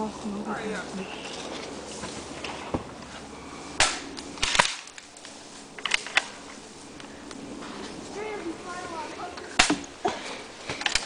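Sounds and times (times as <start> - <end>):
airsoft gun shots: 3.8 - 4.9, 9.6 - 9.9.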